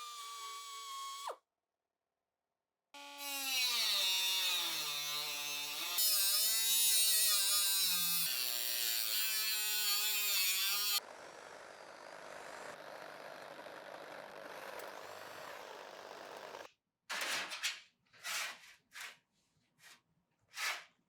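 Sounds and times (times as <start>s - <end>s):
power tool motor whining: 8.3s - 16.7s.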